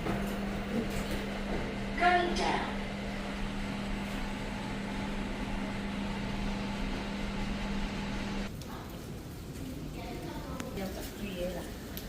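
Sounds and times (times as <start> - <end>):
appliance humming and whirring: 0.0 - 8.7.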